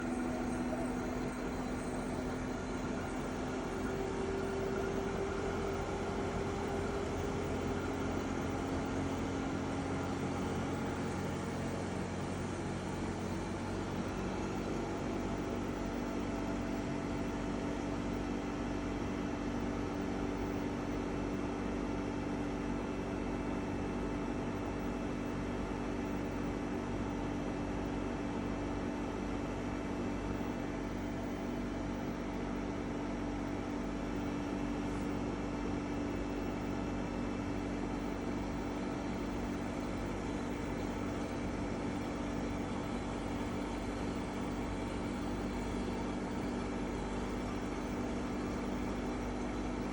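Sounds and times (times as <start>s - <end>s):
air conditioner humming: 29.6s - 49.9s.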